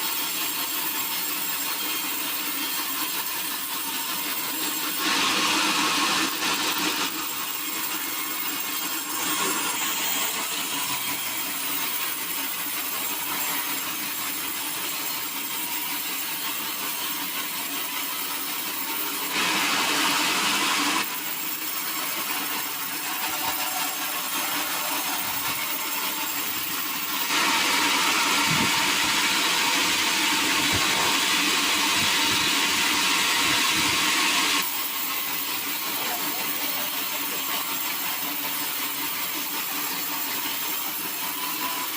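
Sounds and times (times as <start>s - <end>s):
sawmill saw cutting wood: 0.0s - 41.9s.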